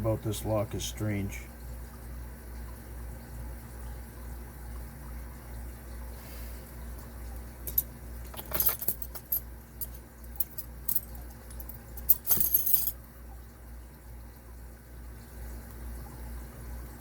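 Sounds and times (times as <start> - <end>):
metal padlock parts clicking and rattling: 7.6 - 13.0.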